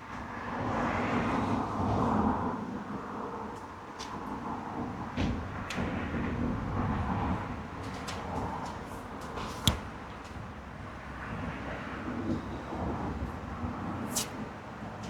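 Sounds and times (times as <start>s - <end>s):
light knocks: 9.3s - 10.4s.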